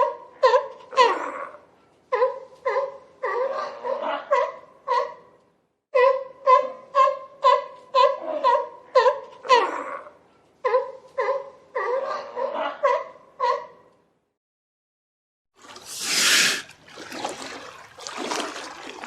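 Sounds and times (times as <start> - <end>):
sea lion barking: 0.0 - 5.4, 6.0 - 13.9.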